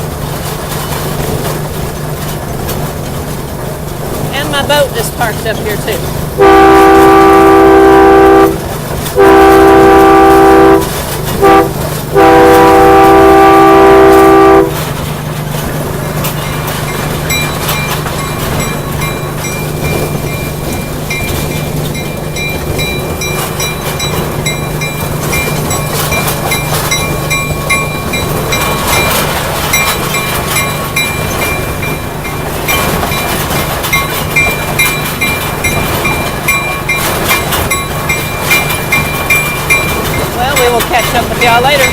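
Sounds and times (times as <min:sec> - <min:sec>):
train rattling: 0:00.0 - 0:41.9
train horn blasts: 0:06.4 - 0:15.0.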